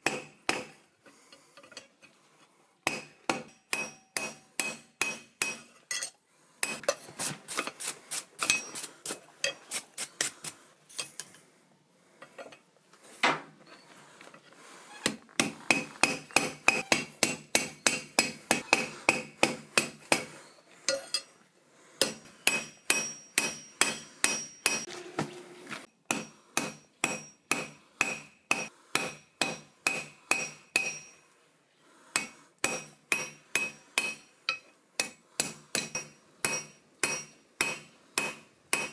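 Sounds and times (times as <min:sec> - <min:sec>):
hammer striking steel on anvil: 0:00.0 - 0:00.8, 0:02.8 - 0:07.0, 0:15.4 - 0:21.3, 0:22.0 - 0:24.9, 0:26.1 - 0:31.2, 0:32.2 - 0:38.9.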